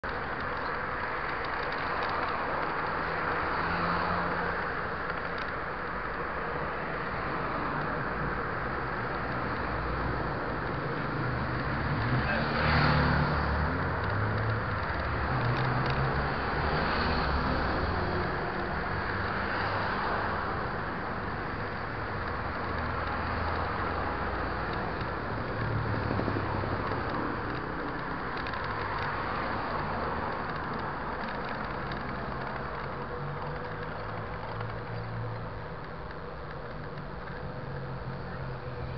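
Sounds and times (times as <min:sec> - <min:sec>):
faint ticks: 0:00.0 - 0:05.6, 0:13.4 - 0:16.2, 0:22.2 - 0:38.9.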